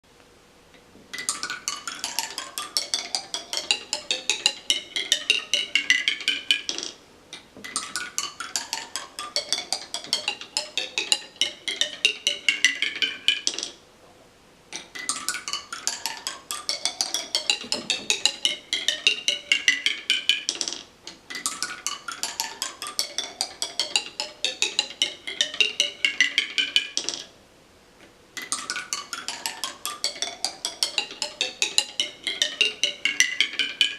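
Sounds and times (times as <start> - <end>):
marbles clattering down musical tower: 1.1 - 7.0, 7.7 - 13.8, 14.9 - 27.3.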